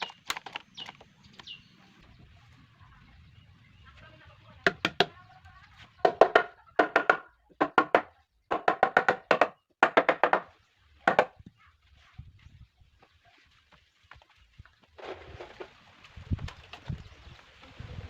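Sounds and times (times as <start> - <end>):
hammer knocking on wood: 4.7 - 5.2, 6.0 - 10.5, 11.1 - 11.4.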